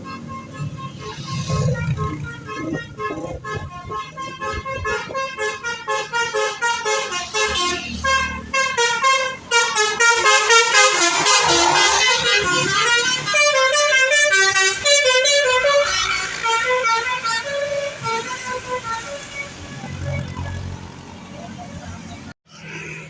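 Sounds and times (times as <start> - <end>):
musical air horn tune: 0.0 - 19.4.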